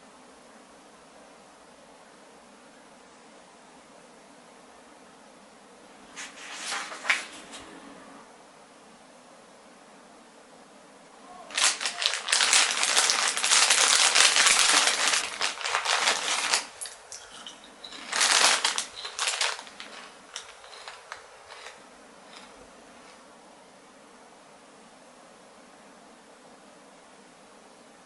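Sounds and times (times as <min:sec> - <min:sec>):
rustling crackling with clicks: 0:11.5 - 0:23.2.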